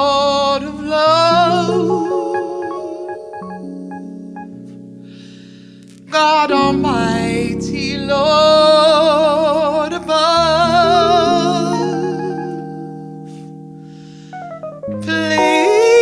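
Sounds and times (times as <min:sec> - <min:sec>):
jazz piano chords: 0:00.0 - 0:05.8, 0:06.5 - 0:16.0
woman singing wordless line: 0:00.7 - 0:04.6, 0:09.8 - 0:13.0.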